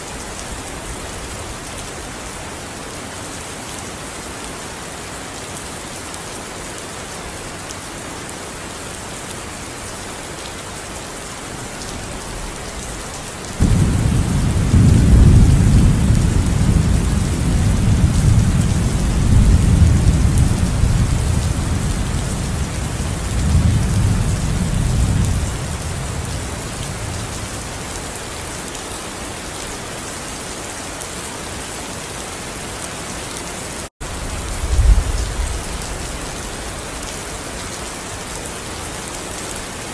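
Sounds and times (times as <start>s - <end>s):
steady rain: 0.0s - 39.9s
thunder rumbling: 12.4s - 27.7s, 34.1s - 36.8s.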